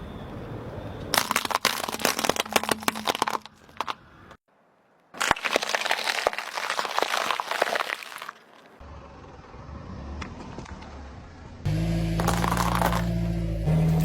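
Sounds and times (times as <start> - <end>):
crispy potatoes crunching: 1.2 - 4.0, 5.2 - 8.8, 12.2 - 13.2.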